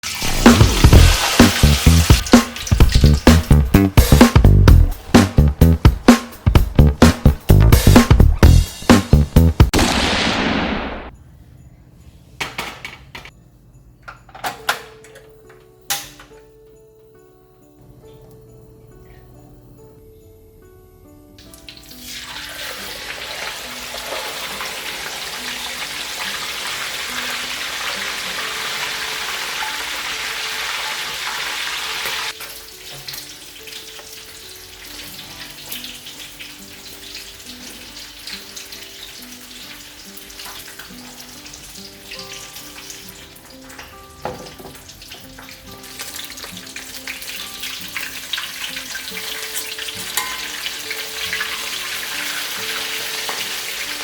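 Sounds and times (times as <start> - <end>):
fish sizzling in hot oil: 0.0 - 4.2, 21.8 - 54.0
oil crackling and popping: 0.0 - 4.5, 21.4 - 54.0
soft background music: 0.1 - 9.5, 11.1 - 54.0.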